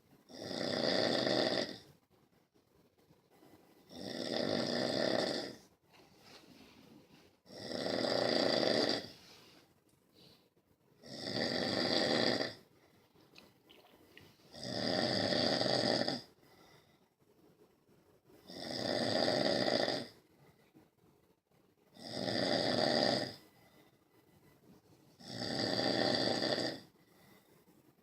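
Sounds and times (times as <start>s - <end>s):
person snoring: 0.3s - 1.9s, 3.4s - 5.7s, 7.4s - 9.4s, 11.0s - 12.7s, 14.5s - 16.8s, 18.4s - 20.2s, 21.9s - 23.8s, 25.2s - 27.5s.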